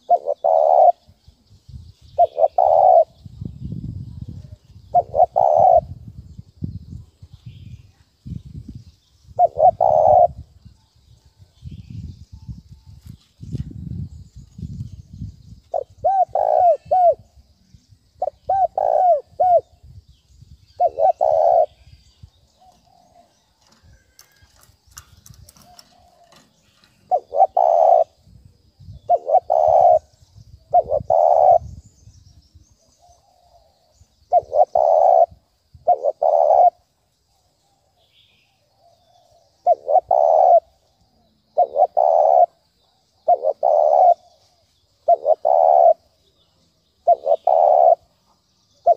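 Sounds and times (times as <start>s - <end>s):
dove cooing: 0.0s - 1.2s, 2.2s - 3.2s, 4.4s - 6.1s, 9.4s - 10.5s, 15.7s - 17.3s, 18.2s - 19.8s, 20.8s - 22.0s, 25.4s - 28.2s, 29.0s - 31.7s, 33.2s - 36.8s, 38.8s - 42.6s, 43.2s - 46.2s, 47.0s - 48.1s.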